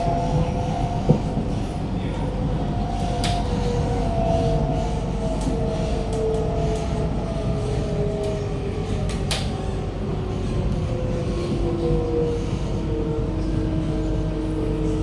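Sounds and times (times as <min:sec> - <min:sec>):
wheels rumbling on rail: 0:00.0 - 0:15.0.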